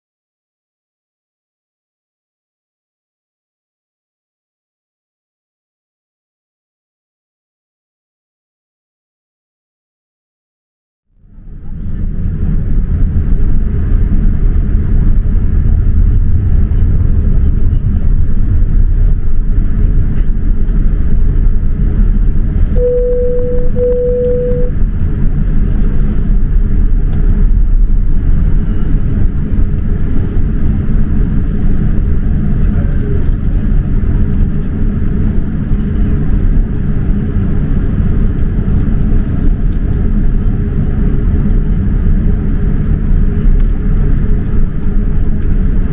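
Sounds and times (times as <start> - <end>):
aircraft cabin rumble: 11.2 - 45.9
short beeps: 22.8 - 24.8.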